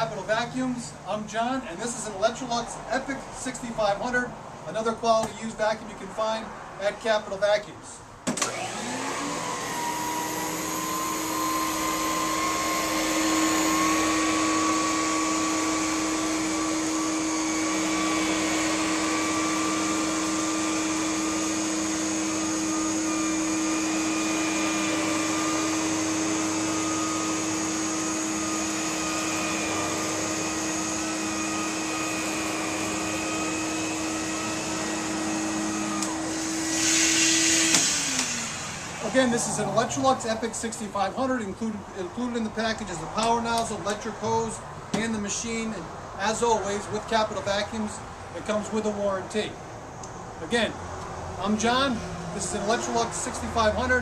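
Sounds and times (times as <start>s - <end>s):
vacuum cleaner motor whine: 8.3s - 40.3s
vacuum air rushing: 8.5s - 40.8s.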